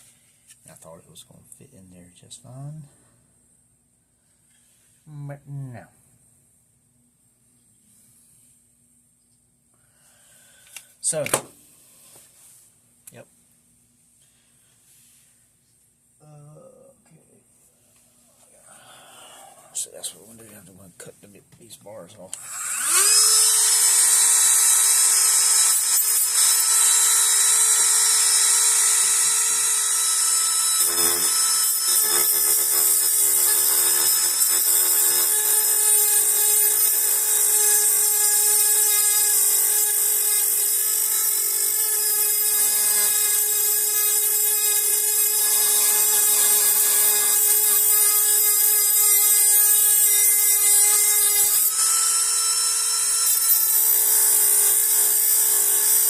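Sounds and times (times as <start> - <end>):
rotary cutter grinding metal: 22.3 - 56.0.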